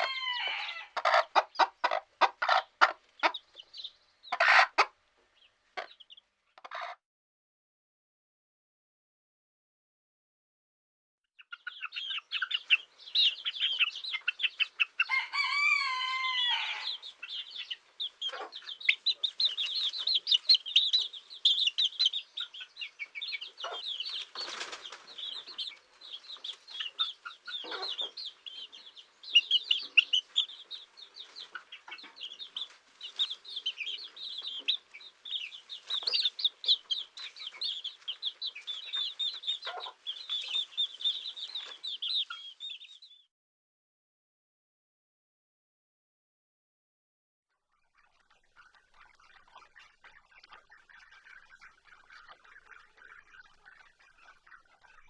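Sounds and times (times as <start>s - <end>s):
chicks peeping: 0.0s - 7.0s, 11.4s - 43.2s, 47.8s - 55.0s
hen clucking: 0.0s - 7.0s, 11.4s - 43.1s, 48.0s - 55.0s
wavering bird call: 15.1s - 17.1s.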